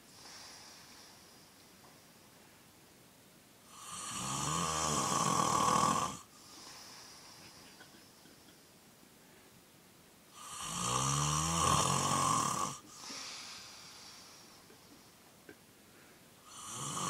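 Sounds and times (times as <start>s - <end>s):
man snoring loudly: 3.7s - 6.3s, 10.3s - 12.8s, 16.4s - 17.0s.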